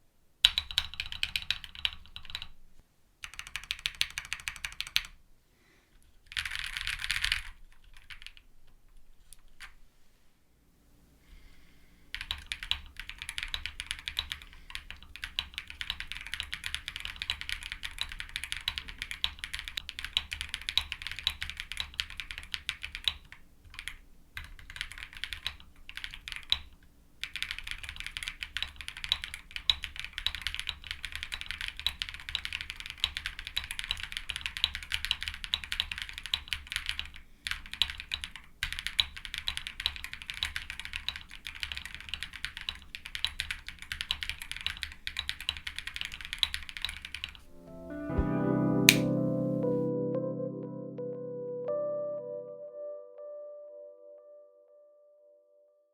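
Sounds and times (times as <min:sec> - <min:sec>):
fast typing on mechanical keyboard: 0:00.4 - 0:02.5, 0:03.2 - 0:05.2, 0:06.3 - 0:08.4, 0:12.1 - 0:47.4.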